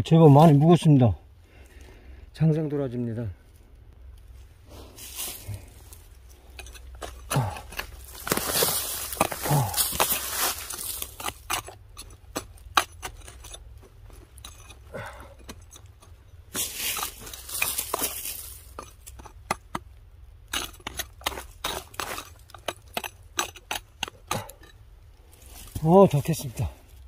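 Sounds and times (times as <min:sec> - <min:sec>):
scraping and rustling: 0:04.3 - 0:14.9, 0:15.5 - 0:19.8
digging tool clinking in ground: 0:05.0 - 0:27.0.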